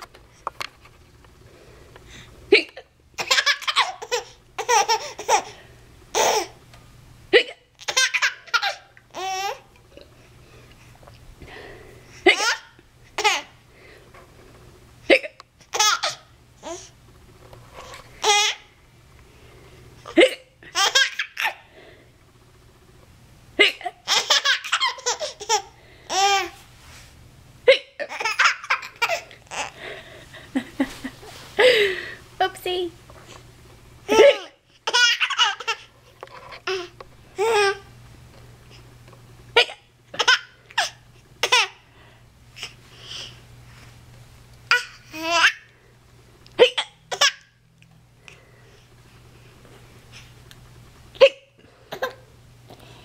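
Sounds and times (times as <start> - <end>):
baby laughing: 2.6 - 6.6, 7.4 - 9.7, 12.2 - 13.6, 15.1 - 16.9, 18.2 - 18.7, 20.1 - 21.6, 23.6 - 26.6, 27.7 - 29.8, 34.1 - 35.9, 36.6 - 37.9, 39.6 - 41.8, 44.7 - 45.7, 46.6 - 47.5.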